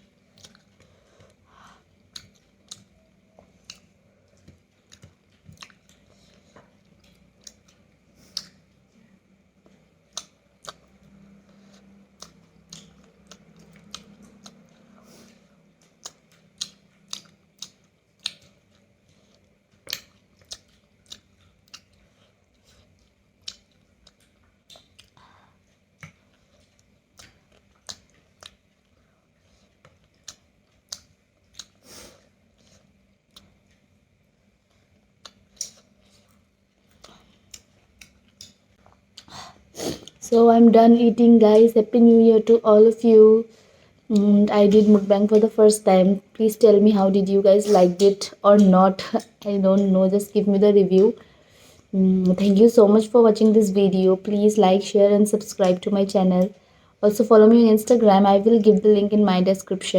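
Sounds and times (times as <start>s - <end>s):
person chewing and biting food: 0.2s - 8.9s, 9.6s - 40.2s
mouth clicks and smacks: 7.0s - 8.7s, 10.1s - 11.0s, 12.2s - 14.8s, 15.8s - 18.7s, 19.8s - 22.0s, 23.4s - 25.2s, 26.0s - 28.7s, 29.9s - 31.8s.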